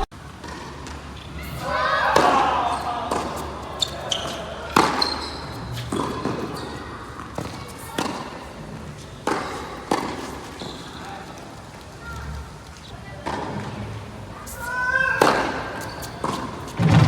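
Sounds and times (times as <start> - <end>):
tennis ball strikes and bounces: 3.1 - 5.1, 5.8 - 6.5, 7.2 - 8.4, 9.2 - 10.6
shoe squeaks on court: 3.4 - 8.1, 10.0 - 11.1, 15.8 - 17.0.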